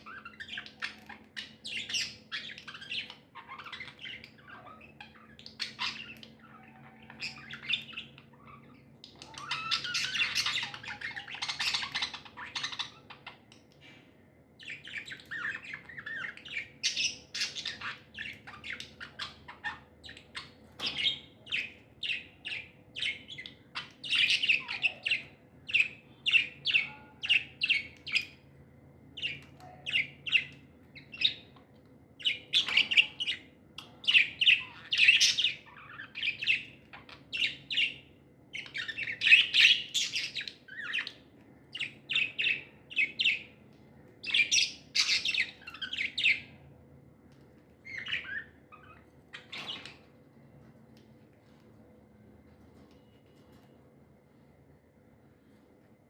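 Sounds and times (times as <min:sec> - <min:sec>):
budgerigars chirping: 0:00.0 - 0:13.9, 0:14.6 - 0:28.5, 0:29.1 - 0:31.6, 0:32.2 - 0:46.6, 0:47.8 - 0:50.1.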